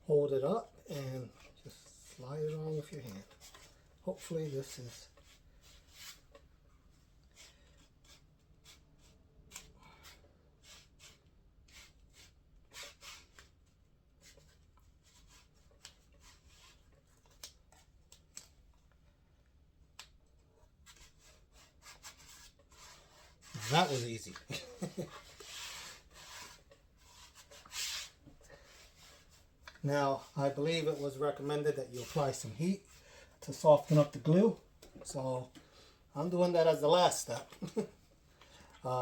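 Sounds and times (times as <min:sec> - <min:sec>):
vinyl sheet rubbing and rustling: 0:00.5 - 0:06.4, 0:20.8 - 0:35.5.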